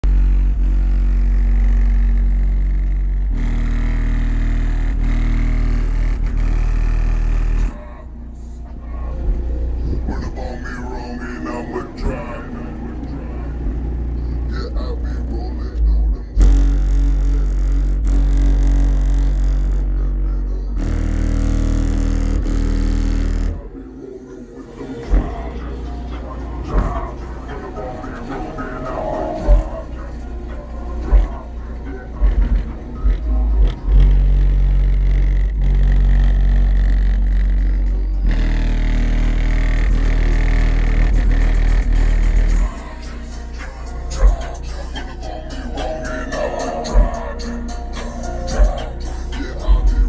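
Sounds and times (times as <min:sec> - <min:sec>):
quiet music: 0:00.0 - 0:50.0
subwoofer deep bass notes: 0:00.0 - 0:50.0.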